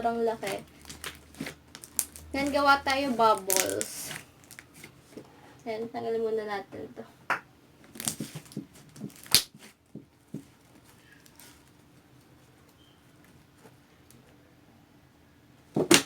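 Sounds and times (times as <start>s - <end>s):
slime snapping and popping: 3.4s - 4.0s, 9.2s - 9.6s.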